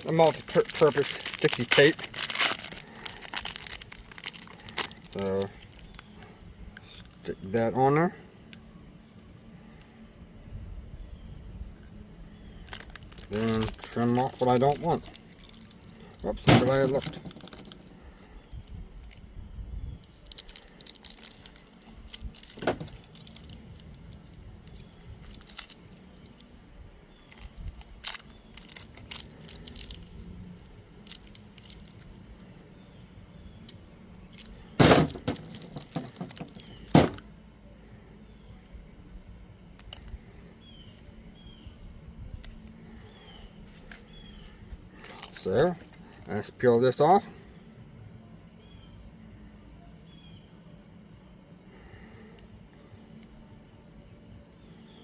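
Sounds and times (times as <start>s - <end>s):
small tools and plastic parts rattling: 0.0s - 7.3s, 12.6s - 19.2s, 20.0s - 26.6s, 27.2s - 32.5s, 33.6s - 37.2s, 45.0s - 46.3s.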